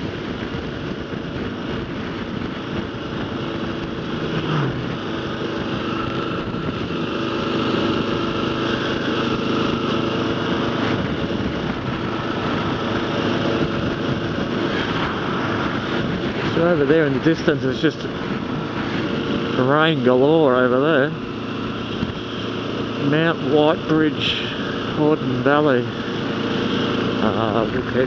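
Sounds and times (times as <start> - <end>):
wind rushing: 0.0 - 19.6
motorcycle engine running: 0.0 - 28.0.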